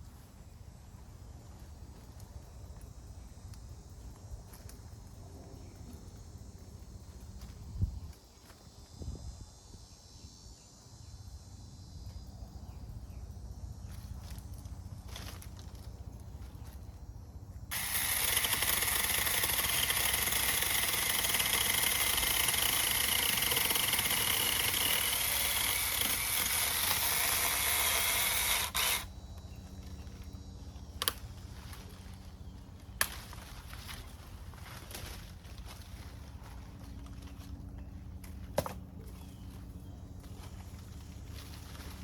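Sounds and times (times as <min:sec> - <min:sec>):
mini chainsaw whining: 0:17.7 - 0:29.1.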